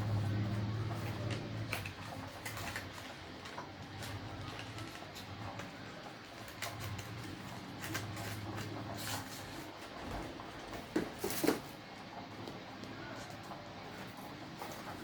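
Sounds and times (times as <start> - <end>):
cardboard box rustling: 6.6 - 11.8.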